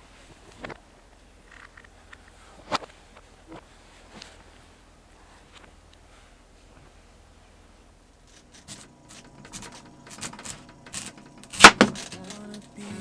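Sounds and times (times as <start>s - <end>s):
small clicks and knocks: 8.3s - 12.8s.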